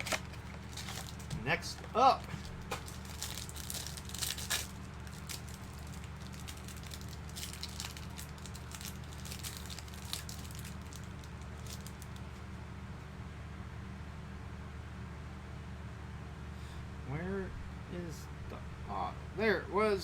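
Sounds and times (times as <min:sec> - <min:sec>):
wrapper and cards crinkling: 0:00.0 - 0:12.4
steady low hum: 0:00.0 - 0:20.0.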